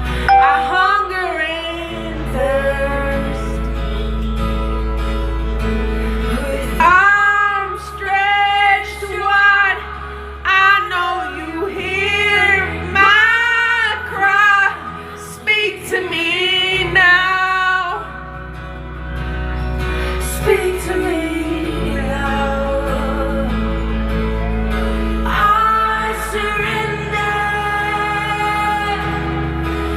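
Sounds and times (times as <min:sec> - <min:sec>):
person singing: 0:00.0 - 0:04.0, 0:20.2 - 0:29.9
sustained instrumental accompaniment: 0:00.3 - 0:06.2.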